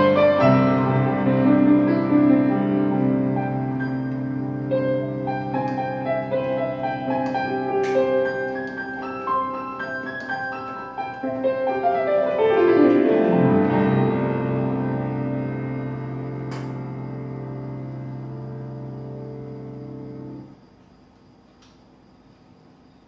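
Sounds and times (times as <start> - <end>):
sampled piano notes: 0.0 - 20.6
sharp click: 16.5 - 16.9, 21.5 - 21.9.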